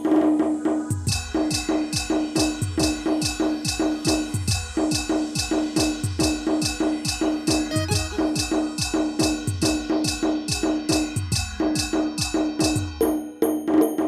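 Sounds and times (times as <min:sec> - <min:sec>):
fast booming drum strokes: 0:00.0 - 0:13.1
repeated keyboard note: 0:07.7 - 0:08.8.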